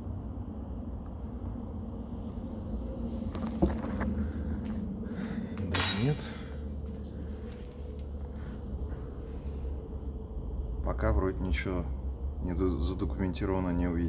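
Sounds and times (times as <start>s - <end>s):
steady low hum: 0.0s - 14.0s
sharp clink of metal or glass: 5.7s - 6.9s.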